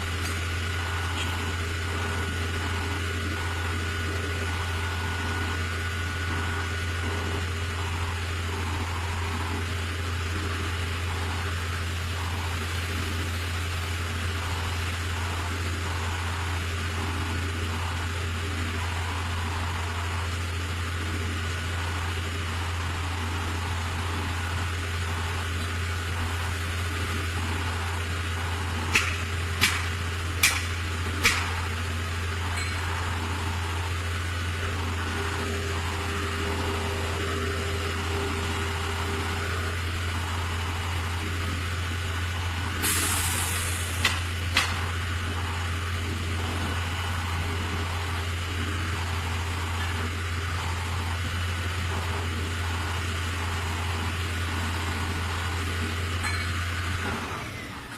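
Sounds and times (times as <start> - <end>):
diesel engine droning: 0.0 - 57.9
sharp metallic knocks: 28.9 - 31.6, 32.5 - 33.1, 56.2 - 56.6
short hiss: 42.8 - 44.0.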